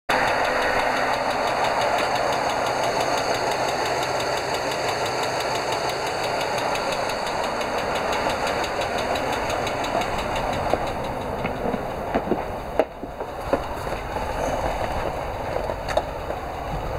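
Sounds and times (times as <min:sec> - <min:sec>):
bus engine idling: 0:00.1 - 0:16.9
rapid valvetrain tapping: 0:00.1 - 0:16.9.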